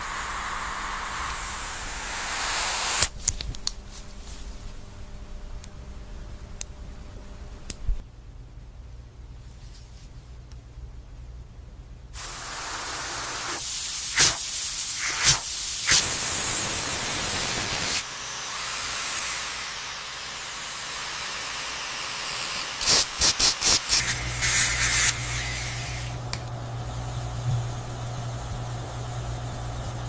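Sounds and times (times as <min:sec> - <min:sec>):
dental air and water spray hissing: 0:00.0 - 0:03.2, 0:12.2 - 0:26.2.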